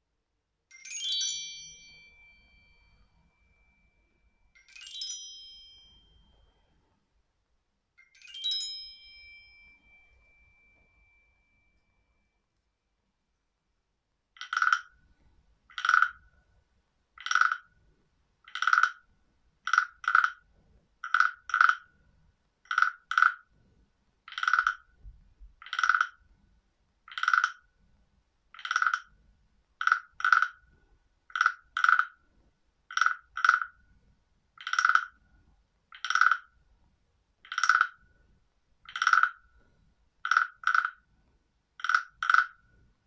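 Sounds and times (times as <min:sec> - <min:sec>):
frog croaking: 0:15.7 - 0:16.2, 0:25.6 - 0:26.2, 0:27.1 - 0:27.6, 0:29.8 - 0:30.6, 0:31.3 - 0:32.2, 0:32.9 - 0:33.7, 0:34.6 - 0:35.2, 0:36.0 - 0:36.5, 0:37.5 - 0:38.0, 0:38.9 - 0:39.4, 0:40.2 - 0:41.0, 0:41.8 - 0:42.6.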